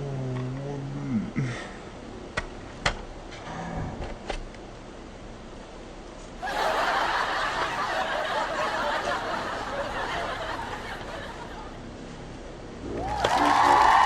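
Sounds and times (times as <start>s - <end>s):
laugh track: 6.4s - 11.9s.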